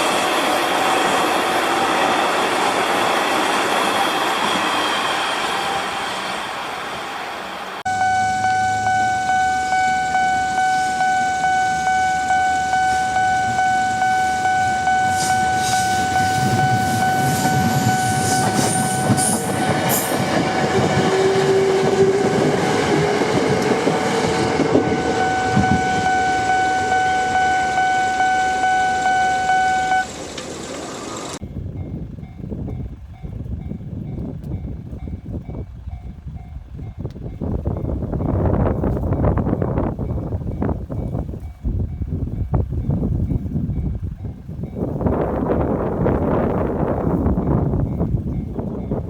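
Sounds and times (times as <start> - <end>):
train passing: 0.0 - 49.0
level crossing warning bell: 7.9 - 31.1.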